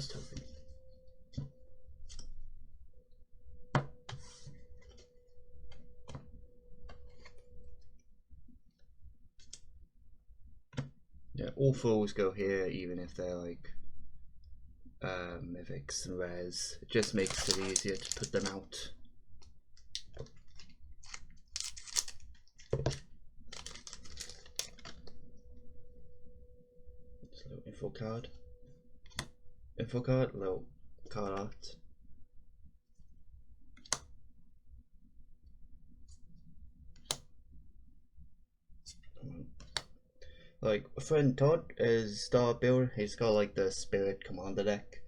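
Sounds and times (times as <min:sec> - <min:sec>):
faint steady hum: 0:00.0 - 0:45.0
card stock rustling: 0:16.9 - 0:18.7, 0:19.8 - 0:25.0
cards clicking on a table: 0:20.0 - 0:23.0.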